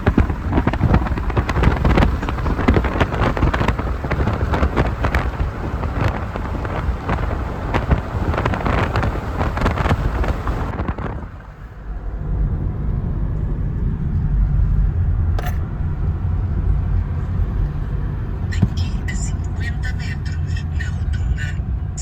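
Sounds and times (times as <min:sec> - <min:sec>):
noisy hiss with crackles: 0:00.0 - 0:22.0
steady low rumble: 0:00.0 - 0:22.0.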